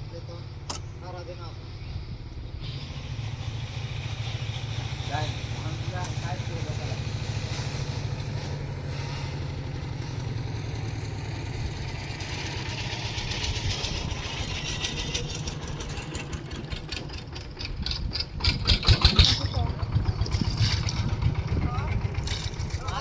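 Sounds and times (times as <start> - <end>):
small engine running: 0.0 - 23.0
hissing rattle: 2.6 - 23.0.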